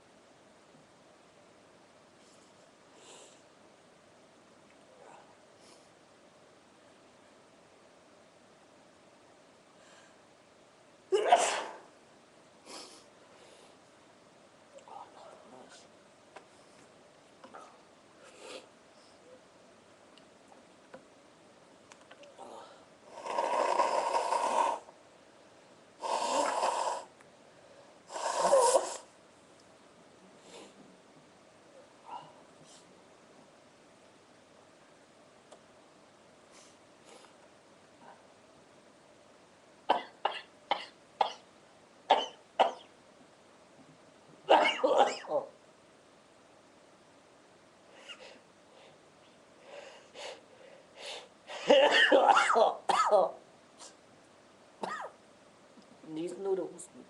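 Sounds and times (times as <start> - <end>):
sneeze and cough: 11.1 - 11.9, 44.5 - 45.5, 51.5 - 54.0, 54.8 - 55.2
person sniffing: 12.6 - 13.6, 26.0 - 27.1, 28.1 - 29.1
person blowing nose: 23.1 - 24.9, 26.0 - 27.1, 28.1 - 29.1.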